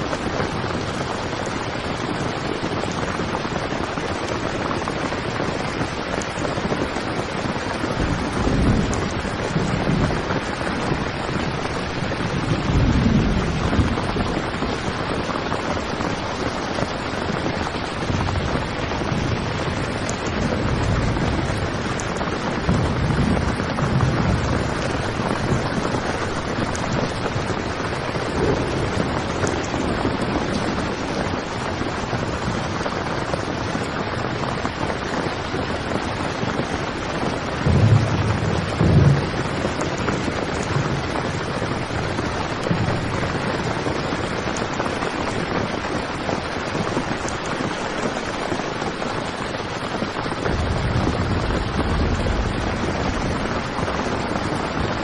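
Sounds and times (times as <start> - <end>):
heavy rain drumming on a tent: 0.0 - 55.0
deep low rumbles: 37.6 - 43.5.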